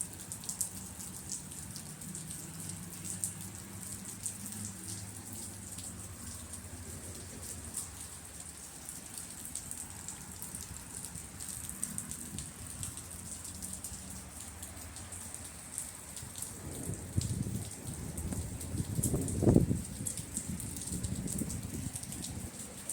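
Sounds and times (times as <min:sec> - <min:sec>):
heavy rain: 0:00.0 - 0:22.9
low thunder rumble: 0:16.4 - 0:22.2.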